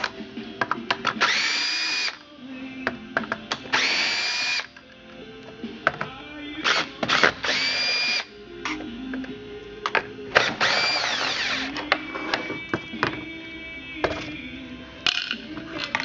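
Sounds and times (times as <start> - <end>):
cordless drill whining: 1.2 - 2.2, 3.7 - 4.7, 6.6 - 8.8, 10.3 - 11.9.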